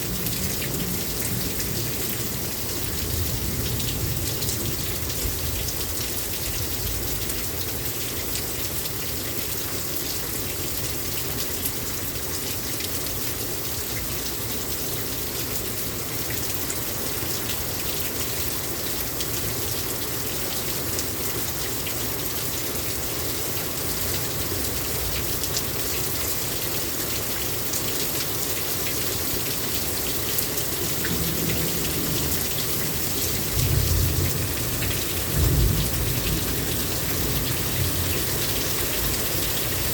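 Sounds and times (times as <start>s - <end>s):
heavy rain pouring: 0.0s - 39.9s
thunder rumbling: 31.1s - 39.1s.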